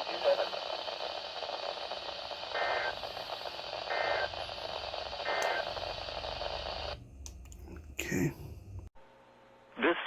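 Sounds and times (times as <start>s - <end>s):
buzzy digital data bursts: 0.0s - 7.0s
radio hiss: 0.0s - 7.0s.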